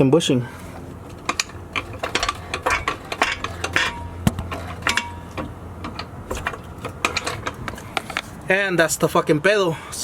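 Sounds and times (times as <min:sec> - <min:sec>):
low steady hum: 0:00.0 - 0:10.0
metallic clicks and knocks: 0:01.1 - 0:08.2.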